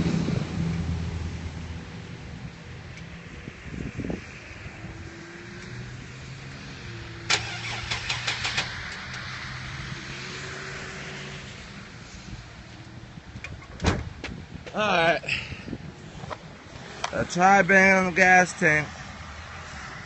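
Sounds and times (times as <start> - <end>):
van engine cranking: 7.3 - 9.3.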